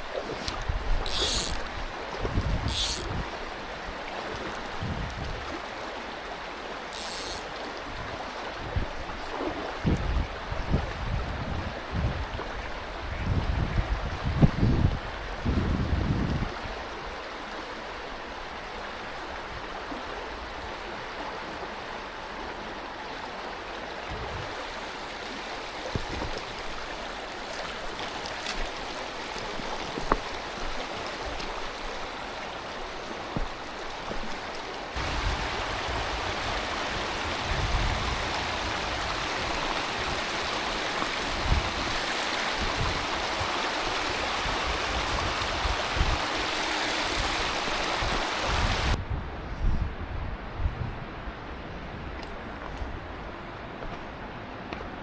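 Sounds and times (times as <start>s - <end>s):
wind buffeting microphone: 0.0s - 3.4s, 4.8s - 5.5s, 8.0s - 16.6s, 35.0s - 53.3s
stream rushing over rocks: 0.0s - 49.0s.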